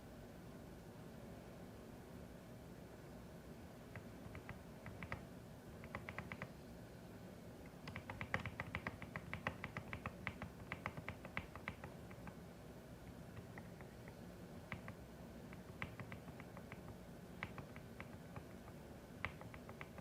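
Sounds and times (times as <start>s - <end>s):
mechanical keyboard typing: 3.9s - 5.2s, 5.8s - 6.5s, 7.7s - 12.4s, 13.1s - 20.0s.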